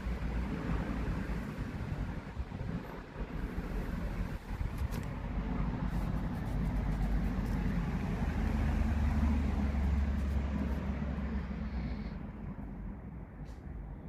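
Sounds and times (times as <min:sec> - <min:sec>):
wind buffeting microphone: 0:00.0 - 0:08.6.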